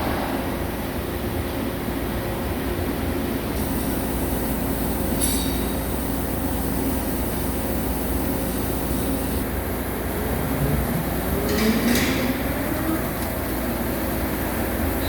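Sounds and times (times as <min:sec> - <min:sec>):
machine tool cutting iron drone: 0:03.6 - 0:15.0.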